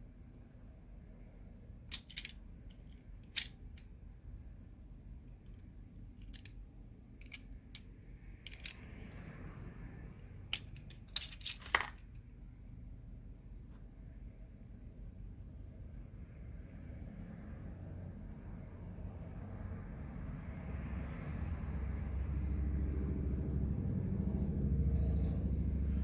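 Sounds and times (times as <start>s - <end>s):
hand tools clicking and snipping: 1.9s - 3.9s, 6.2s - 6.6s, 7.2s - 8.8s, 10.5s - 12.0s.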